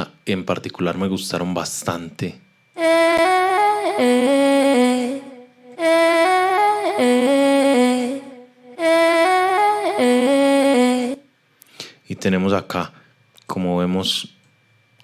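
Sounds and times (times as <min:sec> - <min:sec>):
sung phrase in layered harmony: 0:02.8 - 0:11.2.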